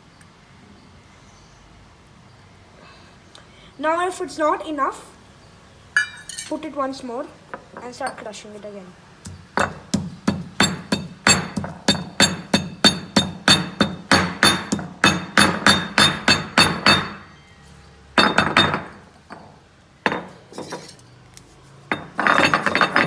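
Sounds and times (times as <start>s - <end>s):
pestle pounding in stone mortar: 9.2s - 17.3s.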